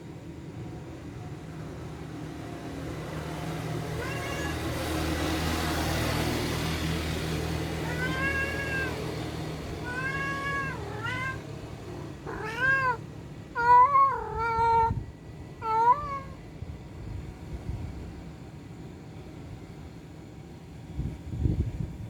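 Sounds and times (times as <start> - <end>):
cat meowing: 3.9 - 5.0, 7.8 - 16.5.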